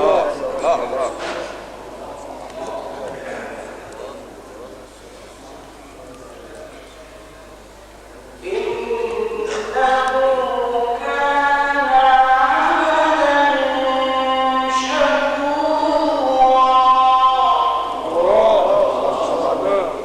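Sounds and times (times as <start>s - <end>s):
man reciting in melodic chant: 0.0s - 1.3s, 8.4s - 20.0s.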